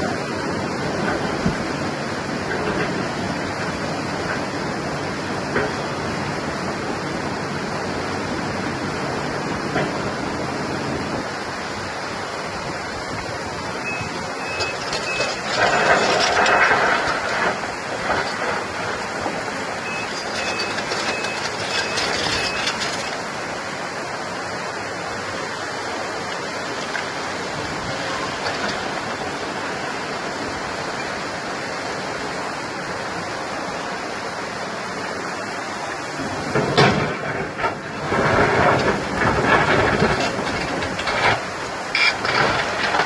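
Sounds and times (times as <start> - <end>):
excavator engine running: 0.0 - 43.0
short beeps: 13.8 - 15.4, 19.8 - 22.6.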